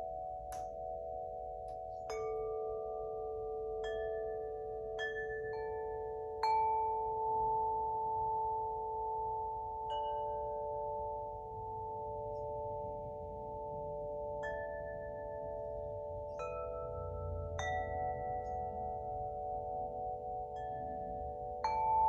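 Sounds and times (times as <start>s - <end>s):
wind chime ringing: 0.0s - 22.0s.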